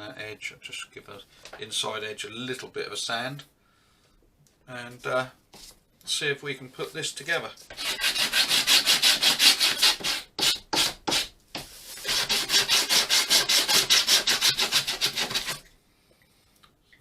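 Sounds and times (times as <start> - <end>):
sandpaper rubbing on wood: 7.8 - 15.6.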